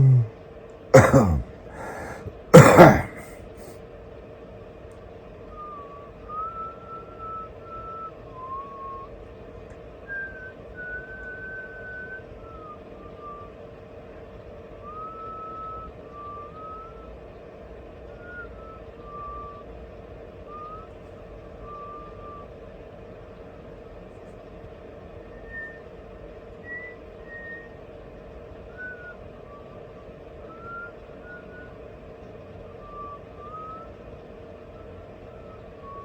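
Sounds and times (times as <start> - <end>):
faint steady hum: 0.0 - 3.8, 4.9 - 36.0
person whistling a slow melody: 5.5 - 9.2, 10.0 - 13.6, 14.8 - 17.1, 18.2 - 19.7, 20.4 - 21.0, 25.3 - 25.9, 26.6 - 27.8, 28.7 - 31.8, 32.8 - 34.0, 34.8 - 36.0.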